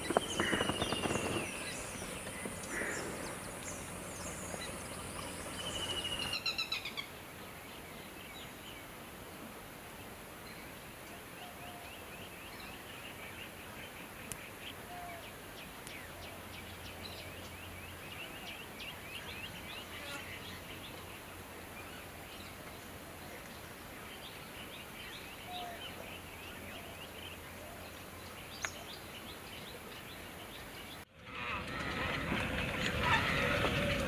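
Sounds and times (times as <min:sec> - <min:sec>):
birds chirping: 0:00.0 - 0:06.9.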